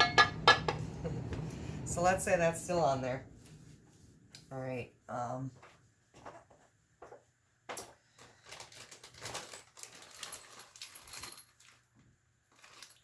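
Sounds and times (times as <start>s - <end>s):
metal parts and tools clinking: 7.8s - 11.9s.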